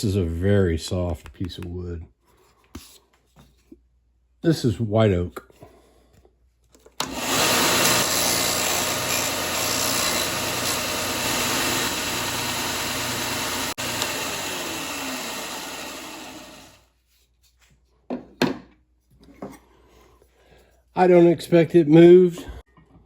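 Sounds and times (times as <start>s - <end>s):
sander grinding wood: 7.0s - 16.8s
machine spinning down: 9.9s - 16.8s.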